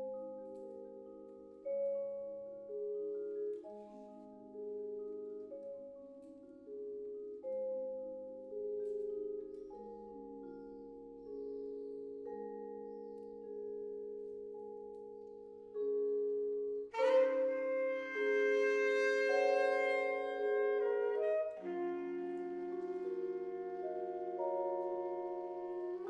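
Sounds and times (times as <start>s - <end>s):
vibraphone playing slow chords: 0.0s - 26.0s
saxophone long held note: 16.9s - 26.0s.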